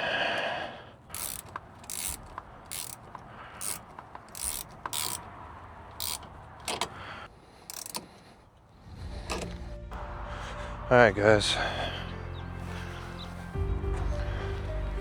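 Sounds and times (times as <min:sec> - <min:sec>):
hand ratchet clicking: 0:01.1 - 0:08.3.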